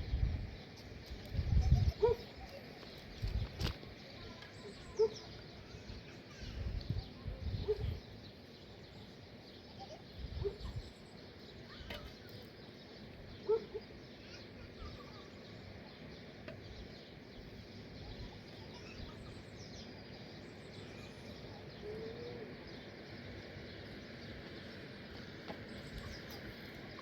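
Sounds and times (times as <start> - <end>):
outdoor background hiss: 0.0 - 27.0
faint bird calls: 0.7 - 27.0.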